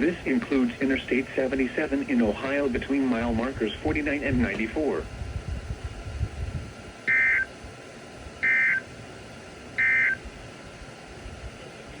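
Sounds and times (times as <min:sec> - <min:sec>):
radio hiss: 0:00.0 - 0:05.2, 0:07.1 - 0:07.6, 0:08.4 - 0:08.9, 0:09.7 - 0:10.2
two-tone data bursts: 0:07.1 - 0:07.5, 0:08.4 - 0:08.9, 0:09.8 - 0:10.2.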